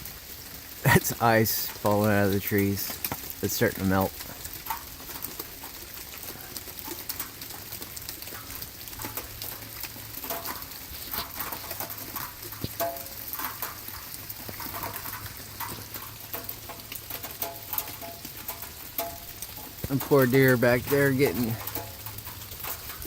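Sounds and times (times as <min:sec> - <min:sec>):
steady hiss: 0:00.0 - 0:23.0
ice pieces ticking and clicking: 0:00.8 - 0:23.0.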